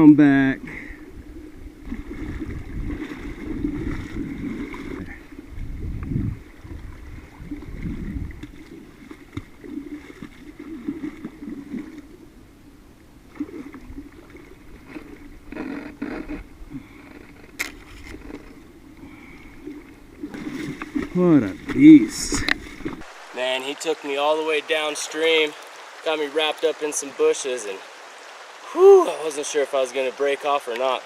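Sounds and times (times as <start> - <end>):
wind rumbling on microphone: 0.8 - 23.3
river water rushing: 18.2 - 31.0.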